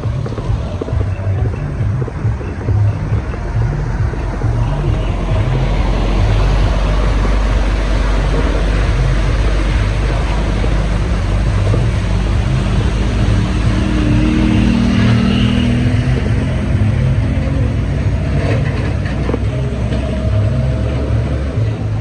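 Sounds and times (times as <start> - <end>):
wind buffeting microphone: 0.0 - 22.0
heavy rain falling: 2.7 - 18.7.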